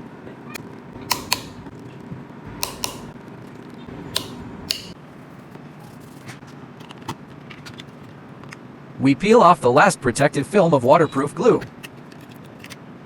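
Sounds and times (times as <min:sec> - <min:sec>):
torque screwdriver clicking: 0:01.1 - 0:01.7, 0:02.6 - 0:03.1, 0:04.2 - 0:05.0.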